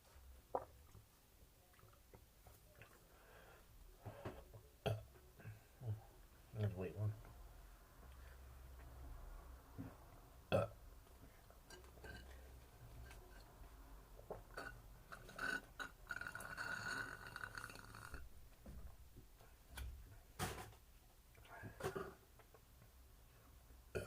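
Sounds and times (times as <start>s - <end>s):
man burping: 4.8s - 5.1s, 10.5s - 10.8s, 14.6s - 18.2s.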